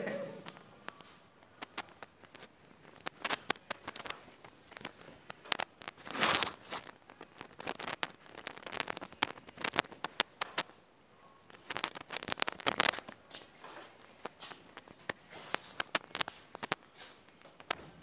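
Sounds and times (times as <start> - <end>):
rustling: 0.0 - 18.0.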